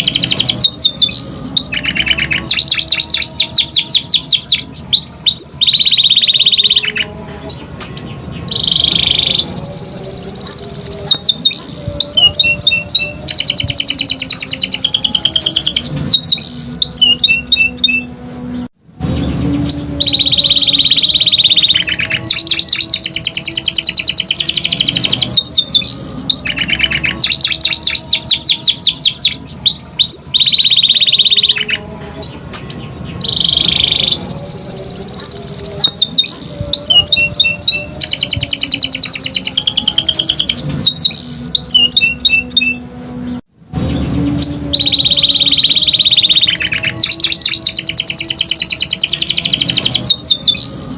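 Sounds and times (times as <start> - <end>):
canary singing trills: 0.0 - 43.4, 44.4 - 50.9.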